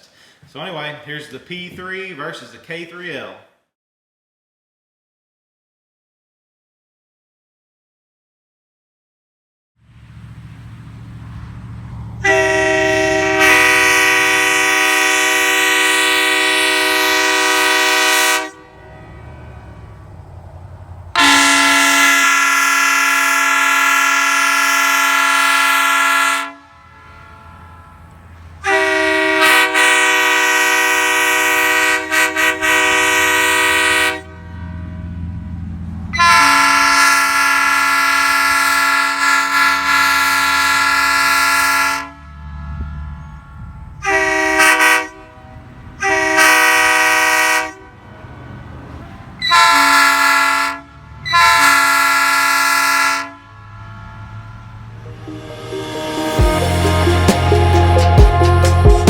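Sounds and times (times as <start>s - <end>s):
locomotive air horn blasts: 12.1s - 59.0s.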